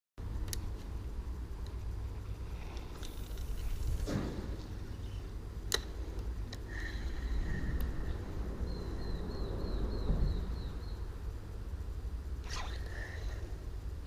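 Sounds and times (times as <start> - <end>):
low outdoor rumble: 0.2 - 14.0
small bird chirping: 8.0 - 11.2.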